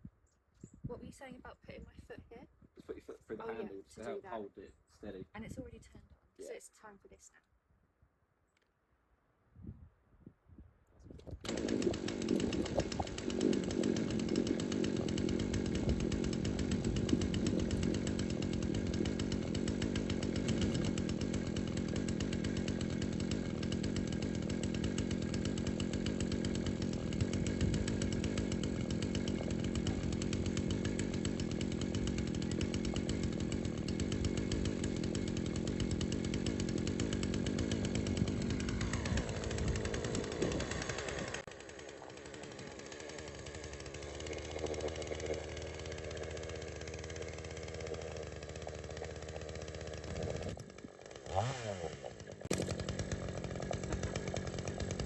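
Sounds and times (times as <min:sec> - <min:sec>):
chainsaw running: 0:03.3 - 0:04.5, 0:11.2 - 0:55.0.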